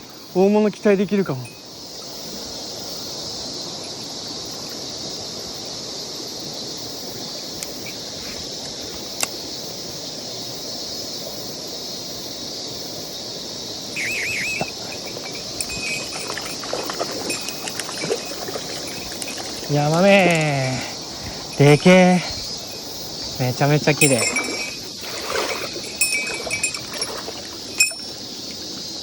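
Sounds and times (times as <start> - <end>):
insects droning: 0.0 - 29.0
stream running: 0.0 - 29.0
warbling chirp: 13.9 - 28.3.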